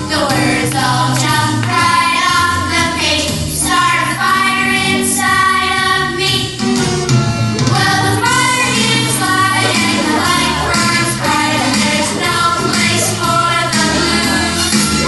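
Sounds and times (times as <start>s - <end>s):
backing music: 5.3s - 15.0s
voices singing held notes: 7.7s - 15.0s.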